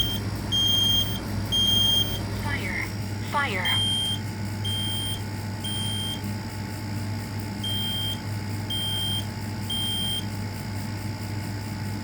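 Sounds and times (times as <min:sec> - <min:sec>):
smoke alarm beeps: 0:00.0 - 0:02.2, 0:03.6 - 0:06.2, 0:07.6 - 0:10.2.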